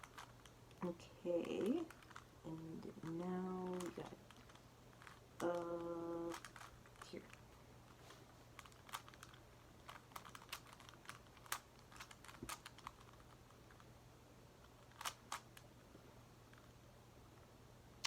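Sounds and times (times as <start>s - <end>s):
plastic puzzle clacks: 8.6s - 13.8s.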